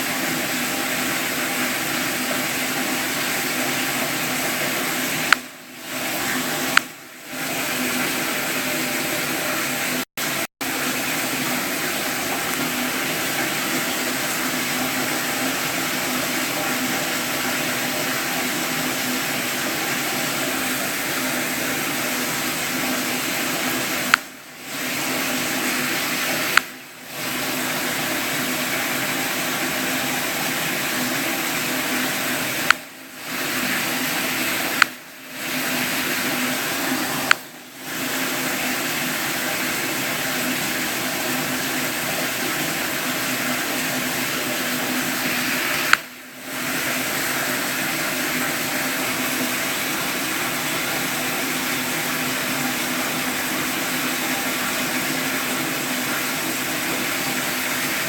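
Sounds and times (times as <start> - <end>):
running water rushing: 0.0 - 58.0
sharp click: 32.6 - 32.9, 34.7 - 35.0, 37.2 - 37.5, 45.8 - 46.1.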